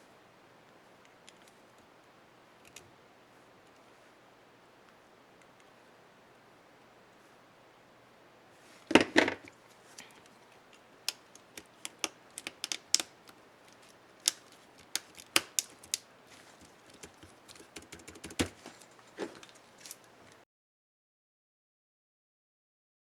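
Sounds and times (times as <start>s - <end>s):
loud plastic snaps: 11.1s - 20.1s
keyboard key clicks: 16.9s - 18.6s.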